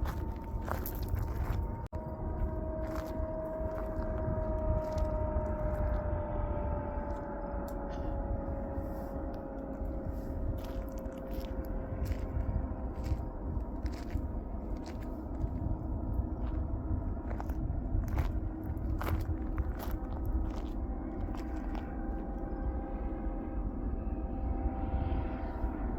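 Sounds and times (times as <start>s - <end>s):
steady whine dropping in pitch: 0.0s - 25.9s.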